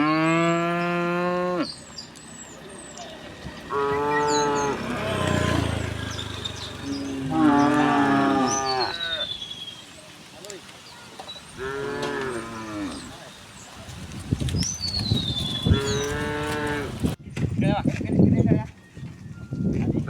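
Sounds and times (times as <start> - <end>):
cows mooing: 0.0 - 2.0, 3.0 - 9.4, 11.5 - 13.3, 15.4 - 17.2.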